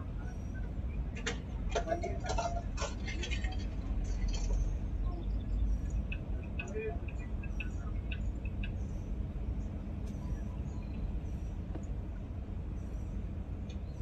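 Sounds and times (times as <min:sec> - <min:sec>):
car engine idling: 0:00.0 - 0:14.0
faint bird chirps: 0:03.7 - 0:14.0.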